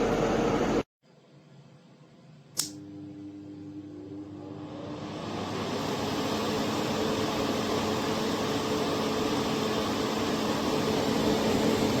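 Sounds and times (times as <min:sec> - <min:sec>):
electric fan air rush: 0:02.5 - 0:12.0
low motor hum: 0:02.7 - 0:12.0.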